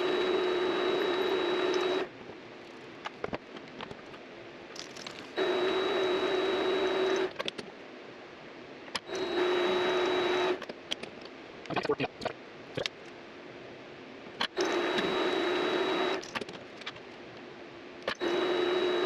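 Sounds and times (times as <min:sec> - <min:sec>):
power tool motor whining: 0:00.0 - 0:02.1, 0:05.4 - 0:07.3, 0:09.0 - 0:10.6, 0:14.5 - 0:16.2, 0:18.1 - 0:19.0.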